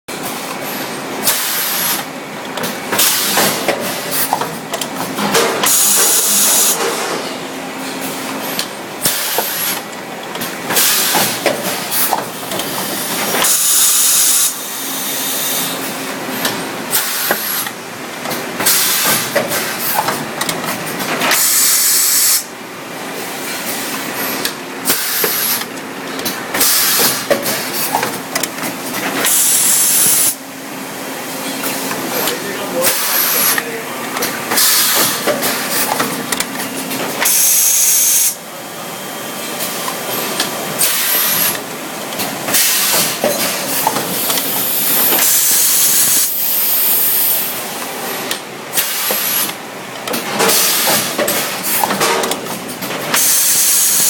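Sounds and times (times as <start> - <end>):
loud air hiss bursts: 1.2 - 2.0, 21.3 - 22.5, 24.8 - 25.6, 26.6 - 27.9, 29.2 - 30.4, 37.2 - 38.4, 44.6 - 47.6, 53.2 - 54.0.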